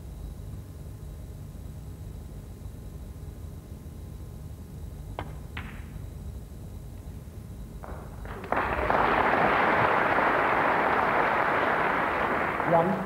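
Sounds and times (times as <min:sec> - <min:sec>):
snooker ball clicks: 0:05.2 - 0:06.0
audience applause: 0:08.3 - 0:13.0.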